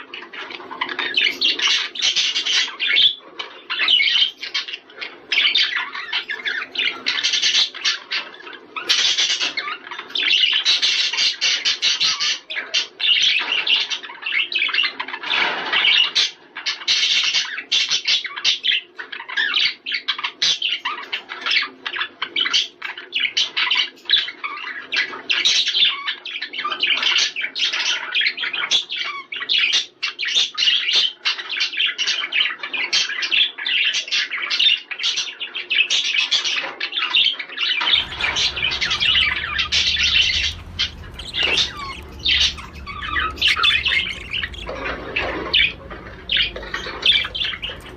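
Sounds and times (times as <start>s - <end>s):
budgerigar warbling: 38.0s - 47.9s
low steady hum: 38.0s - 47.9s.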